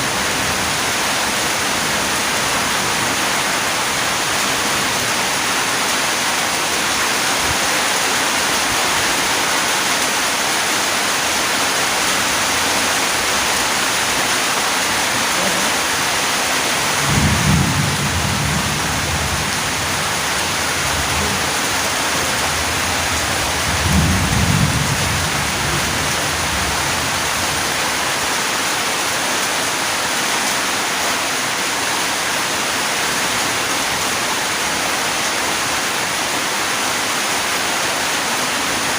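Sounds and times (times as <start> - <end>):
steady rain hiss: 0.0 - 38.9
low rumbles of thunder: 16.8 - 21.6, 22.7 - 26.2.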